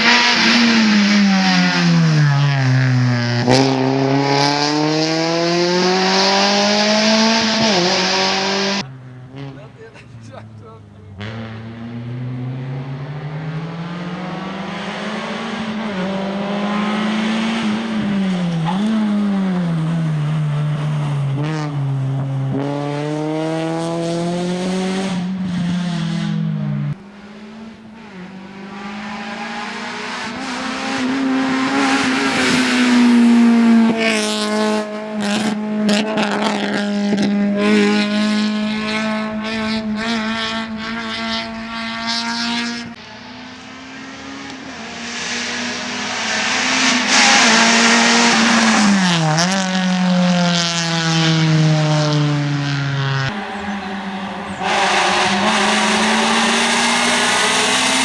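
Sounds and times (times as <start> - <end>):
car engine at high revs: 0.0 - 58.0.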